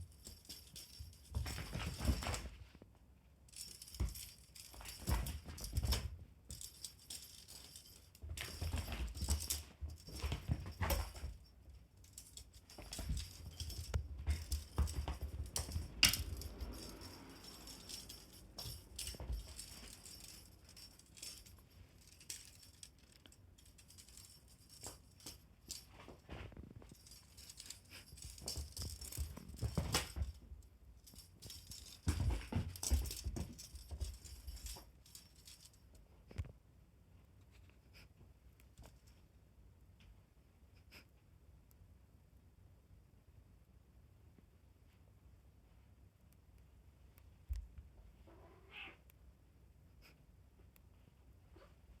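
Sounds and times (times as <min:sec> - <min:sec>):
toy jingling and rattling: 0:00.0 - 0:02.6, 0:03.5 - 0:35.9
pets thumping and scrabbling on floor: 0:00.1 - 0:22.8, 0:23.8 - 0:35.7.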